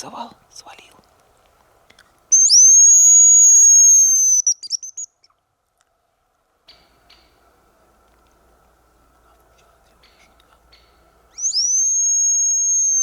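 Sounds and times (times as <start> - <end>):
high thin whistle of bird caller: 2.3 - 5.2, 11.3 - 13.0
quick stuttering whistle notes: 2.4 - 5.1, 11.4 - 13.0.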